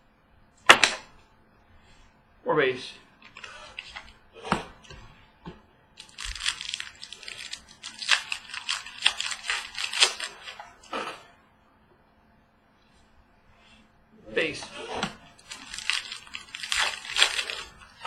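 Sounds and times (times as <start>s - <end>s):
foil wrapper tearing and crumpling: 3.4s - 4.1s, 6.0s - 10.9s, 14.8s - 18.0s.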